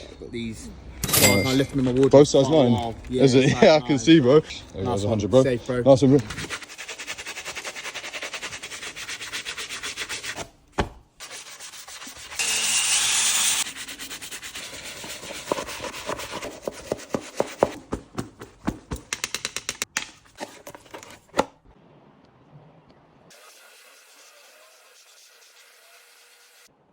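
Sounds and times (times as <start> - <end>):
brush scrubbing shoe: 6.2 - 10.5, 11.2 - 12.4, 13.6 - 18.9.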